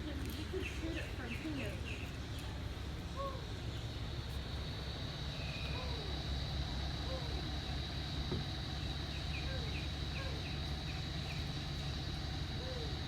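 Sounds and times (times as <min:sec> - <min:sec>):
high insect drone: 0:03.1 - 0:13.0.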